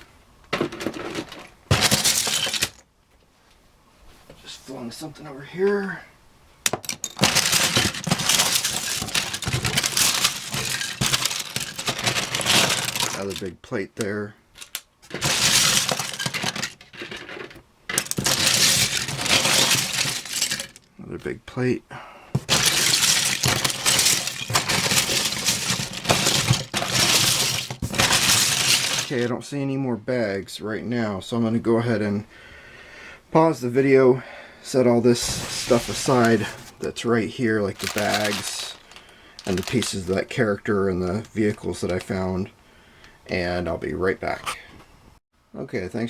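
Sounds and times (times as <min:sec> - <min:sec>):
plastic bricks clattering: 0:00.5 - 0:02.9, 0:06.7 - 0:20.9, 0:22.4 - 0:29.3, 0:35.2 - 0:37.0, 0:37.6 - 0:42.2.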